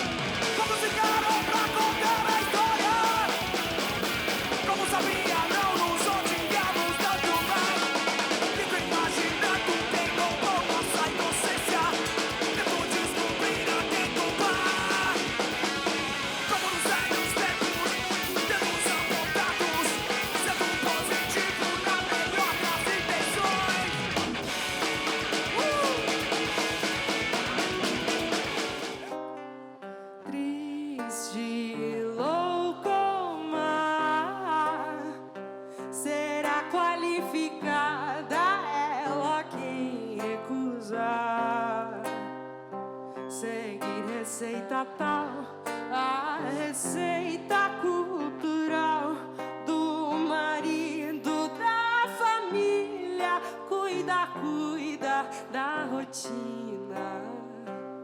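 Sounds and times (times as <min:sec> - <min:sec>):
drum kit: 0:00.0 - 0:29.2
electric guitar rock: 0:00.0 - 0:29.4.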